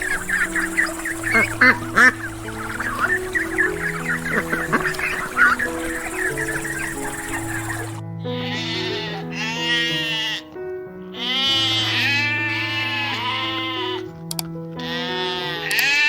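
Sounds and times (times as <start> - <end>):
background music with sustained notes: 0.0 - 16.0
sheep bleating: 8.2 - 10.4, 11.1 - 14.1, 14.8 - 16.0.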